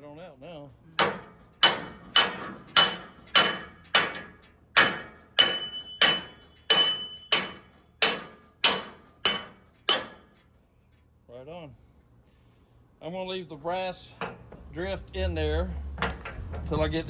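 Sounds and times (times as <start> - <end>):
hammer striking metal drift: 1.0 - 10.4.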